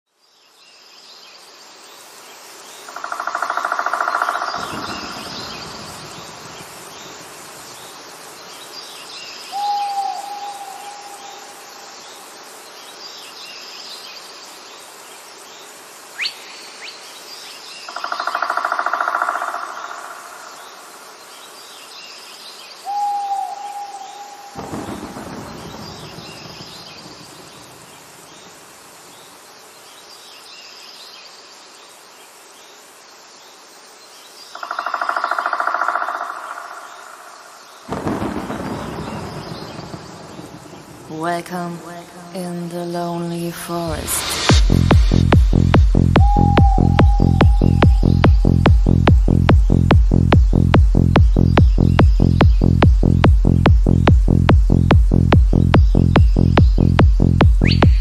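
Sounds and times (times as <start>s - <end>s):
steady insect hum: 0.1s - 58.0s
hooked and buzzy bird calls: 34.5s - 38.8s
birds calling: 44.4s - 58.0s
faint high chirps: 46.2s - 49.4s.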